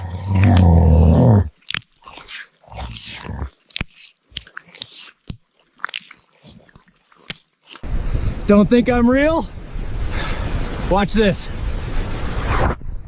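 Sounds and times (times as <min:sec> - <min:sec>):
deep creature growl: 0:00.0 - 0:01.5, 0:02.7 - 0:03.6
crunching chewing bites: 0:00.0 - 0:07.9.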